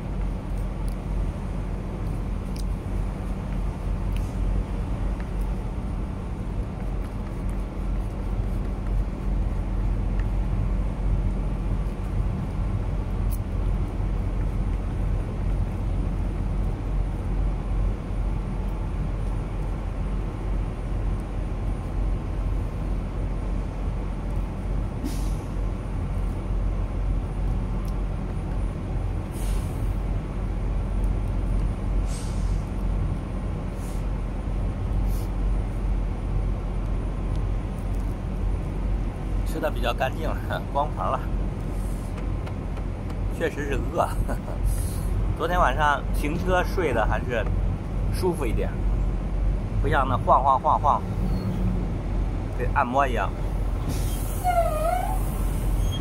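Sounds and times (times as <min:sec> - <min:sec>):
air brakes hissing: 0:25.0 - 0:25.6, 0:29.2 - 0:30.0, 0:32.0 - 0:32.7, 0:33.7 - 0:34.1, 0:35.0 - 0:35.4, 0:41.7 - 0:42.2, 0:44.6 - 0:45.3, 0:53.8 - 0:56.0.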